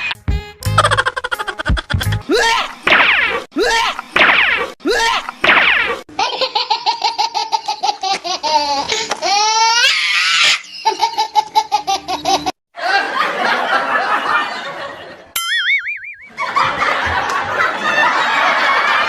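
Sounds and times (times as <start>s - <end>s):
high-pitched cackle: 0.7s - 4.4s, 5.0s - 14.4s, 15.4s - 19.0s
rising squealing laugh: 9.3s - 11.4s
crowd laughing: 10.8s - 15.4s, 16.3s - 19.0s.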